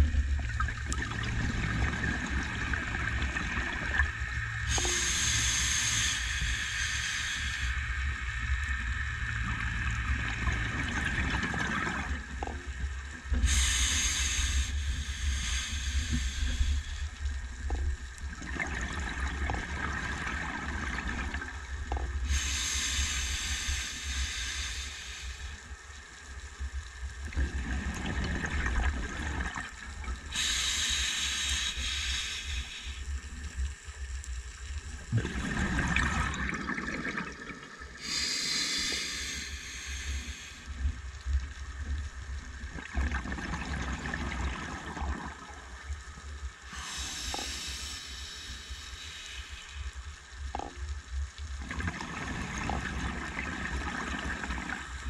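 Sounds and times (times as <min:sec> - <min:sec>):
bubbles gurgling underwater: 0:00.0 - 0:04.8, 0:27.3 - 0:30.2, 0:35.0 - 0:38.0, 0:42.7 - 0:45.6, 0:51.6 - 0:54.9
air hissing through regulator: 0:02.5 - 0:08.8, 0:13.3 - 0:17.3, 0:22.2 - 0:25.7, 0:30.0 - 0:33.6, 0:38.0 - 0:41.0, 0:46.6 - 0:50.3.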